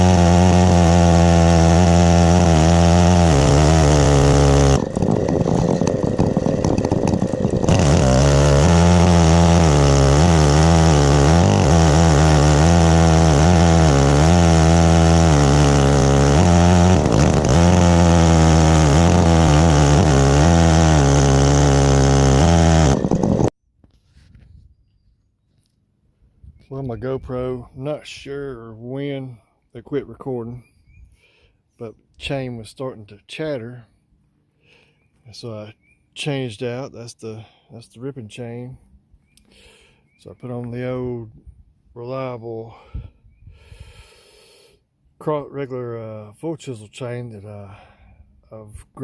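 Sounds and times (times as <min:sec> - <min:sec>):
chainsaw cutting log: 0:00.0 - 0:23.6.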